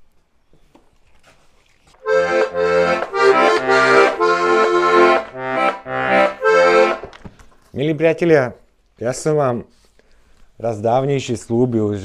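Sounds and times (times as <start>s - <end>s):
button accordion playing chords: 2.0s - 7.1s.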